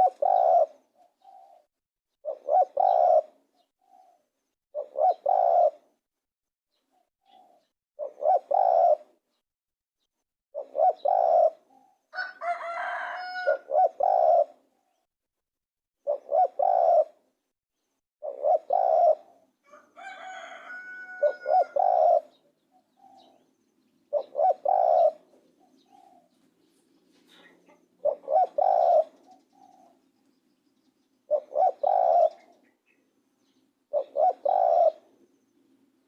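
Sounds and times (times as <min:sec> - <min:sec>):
bird call steady-pitched: 0:00.0 - 0:05.9, 0:06.8 - 0:09.4, 0:10.6 - 0:12.6, 0:13.5 - 0:15.1, 0:16.0 - 0:17.2, 0:18.2 - 0:35.7
dove cooing: 0:00.0 - 0:06.0, 0:06.9 - 0:09.3, 0:10.5 - 0:15.0, 0:16.0 - 0:17.2, 0:18.2 - 0:23.5, 0:24.1 - 0:26.4, 0:27.2 - 0:30.2, 0:31.3 - 0:32.8, 0:33.5 - 0:35.3.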